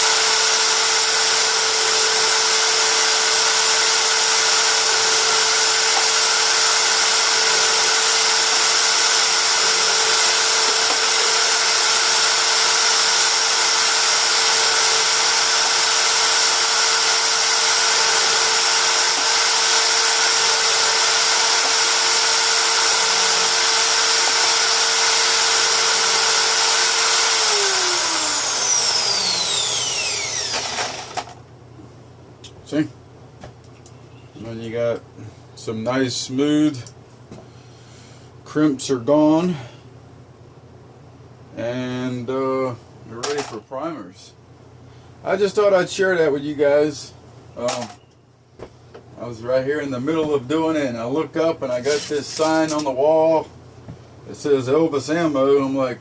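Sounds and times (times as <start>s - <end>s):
drill bit cutting metal: 0.0s - 31.4s
drill motor whining: 0.0s - 31.4s.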